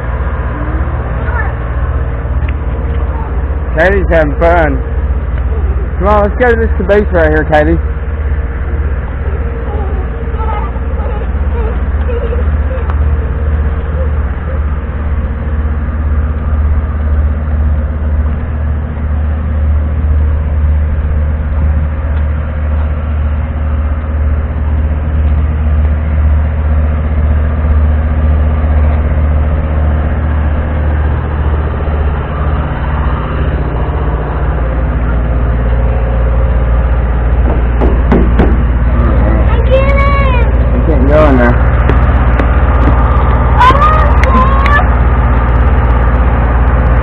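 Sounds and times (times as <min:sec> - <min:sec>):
heavy engine idling: 0:00.0 - 0:47.0.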